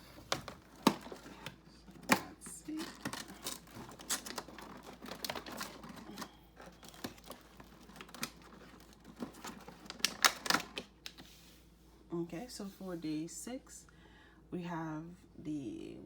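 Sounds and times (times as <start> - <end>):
packaging clicks and rustles: 0.0 - 11.3.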